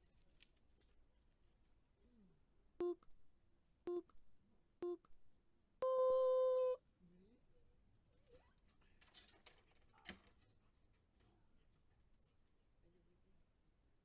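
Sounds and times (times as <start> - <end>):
short low beeps: 2.8 - 3.0, 3.9 - 4.1, 4.8 - 5.1, 5.8 - 6.8
long high beep: 5.8 - 6.8.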